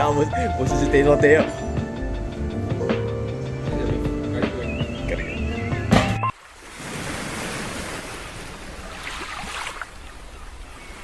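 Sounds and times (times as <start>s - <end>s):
music burst: 0.0s - 6.3s
wind: 0.0s - 11.0s
sea waves rushing: 6.2s - 11.0s.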